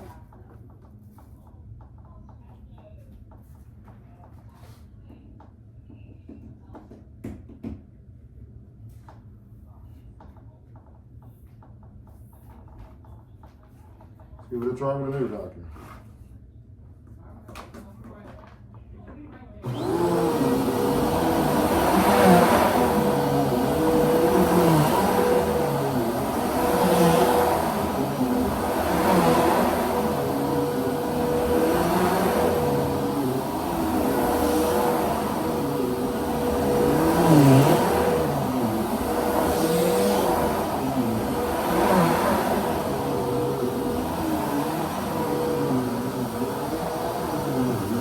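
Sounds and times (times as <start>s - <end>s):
vacuum cleaner running: 19.6s - 48.0s.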